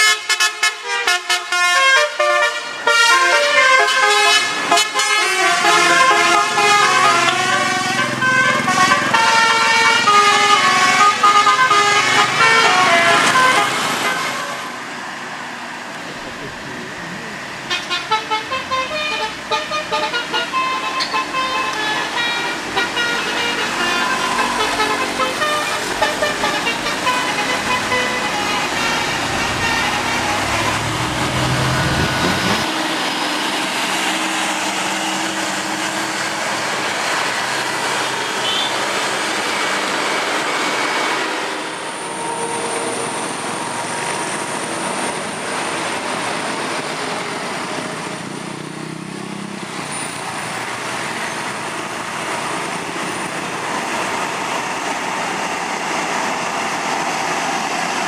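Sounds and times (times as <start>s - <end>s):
multi-tone bus horn: 0.0s - 14.9s, 17.4s - 53.5s
heavy bus engine: 0.0s - 58.0s
road traffic noise: 0.0s - 58.0s.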